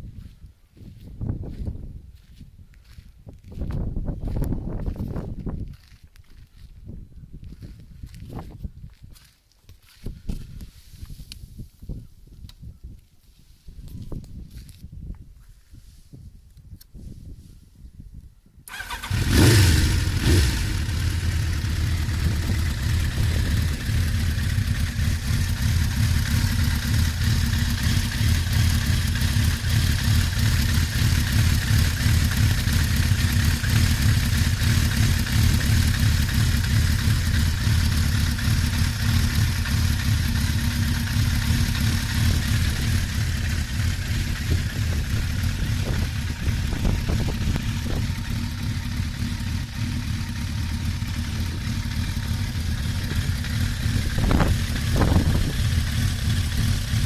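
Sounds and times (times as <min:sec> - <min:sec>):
motorcycle engine idling: 0:18.7 - 0:57.0.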